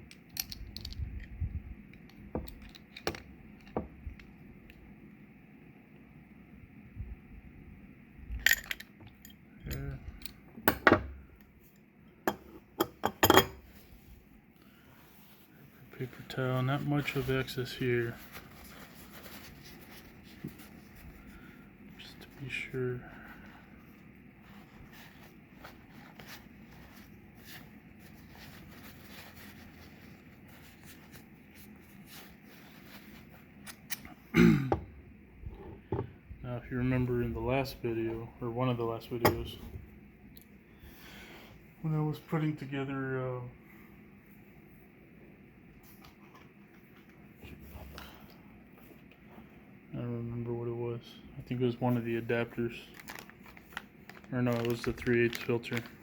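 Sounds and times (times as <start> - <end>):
paper towel rustling: 13.7 - 33.6, 51.7 - 56.0.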